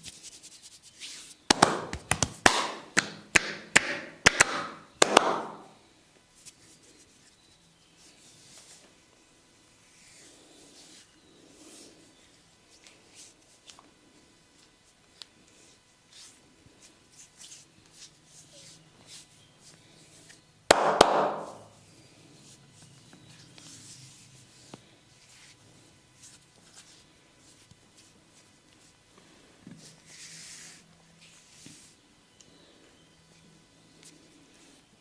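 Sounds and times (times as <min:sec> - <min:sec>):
hands rubbing and tapping: 0:01.4 - 0:05.7, 0:20.7 - 0:21.7.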